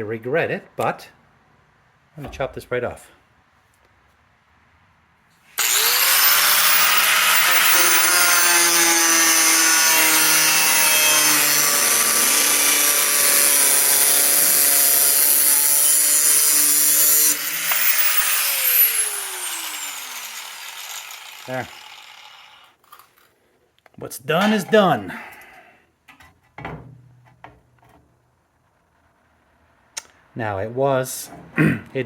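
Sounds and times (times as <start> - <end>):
power tool cutting sheet metal: 5.6 - 22.8.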